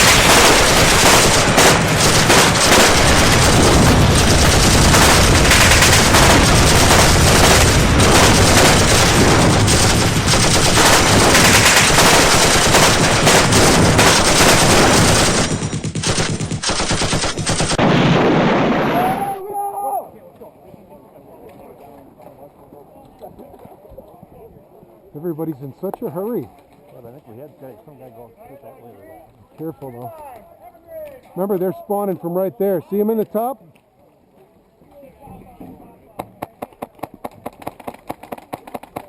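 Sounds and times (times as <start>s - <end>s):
rapid automatic gunfire: 0.0s - 18.9s.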